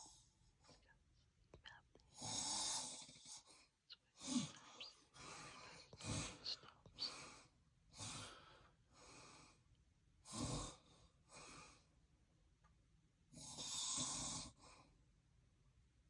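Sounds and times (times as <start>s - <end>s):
man breathing heavily in sleep: 4.2s - 9.6s, 10.3s - 11.9s.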